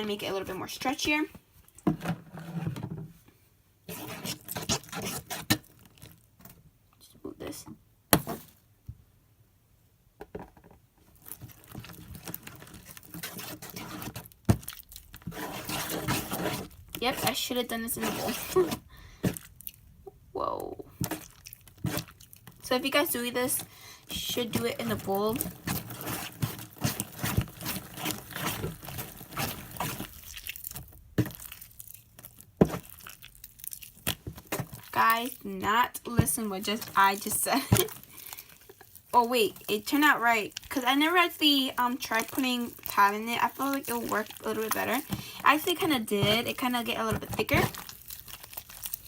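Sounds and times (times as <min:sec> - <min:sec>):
slime squished by hand: 0:21.0 - 0:22.6, 0:24.6 - 0:35.4, 0:36.0 - 0:49.0.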